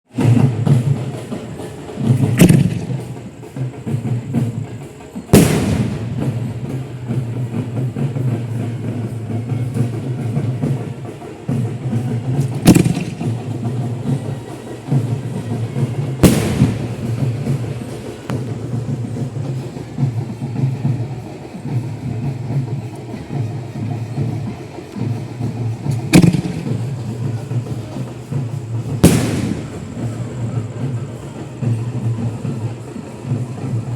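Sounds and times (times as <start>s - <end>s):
continuous low rumble: 0.2s - 33.9s
firework shells bursting: 2.2s - 3.3s, 5.3s - 6.7s, 12.4s - 13.6s, 16.2s - 18.6s, 26.1s - 27.1s, 29.0s - 30.5s.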